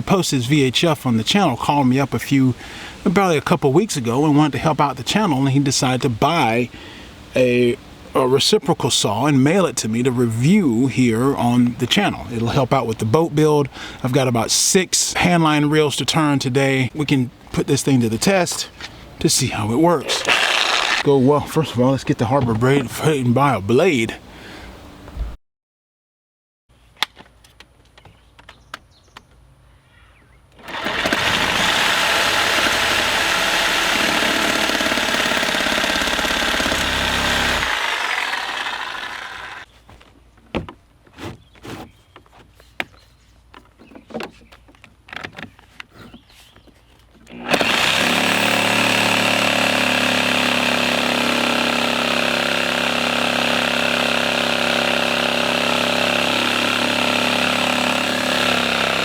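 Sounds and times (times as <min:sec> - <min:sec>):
electric saw cutting wood: 0:20.0 - 0:21.1, 0:30.6 - 0:39.7, 0:47.3 - 0:59.0.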